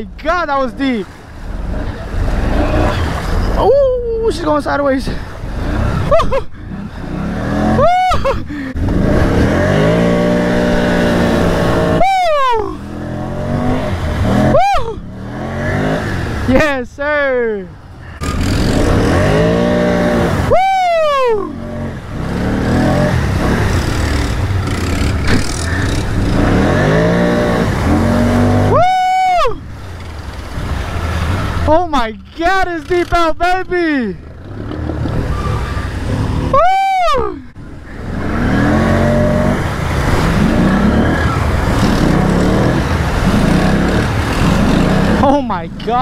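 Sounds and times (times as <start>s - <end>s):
atv engine revving: 0.0s - 46.0s
vehicle driving through mud and water: 0.0s - 46.0s
person shouting woo: 3.6s - 4.3s, 7.8s - 8.3s, 11.9s - 12.8s, 14.4s - 15.1s, 20.5s - 21.6s, 28.6s - 29.7s, 36.5s - 37.5s
rider whooping: 7.5s - 8.8s, 11.6s - 13.0s, 14.2s - 15.9s, 19.1s - 21.9s, 28.2s - 29.8s, 35.2s - 39.4s.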